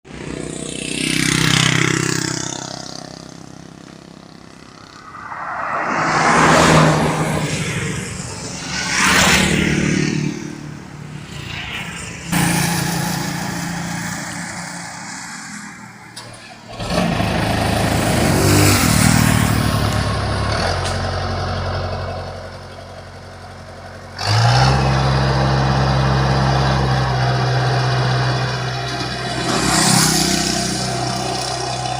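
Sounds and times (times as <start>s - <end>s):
vehicles passing by: 0.0s - 31.9s
low engine hum: 3.1s - 9.9s.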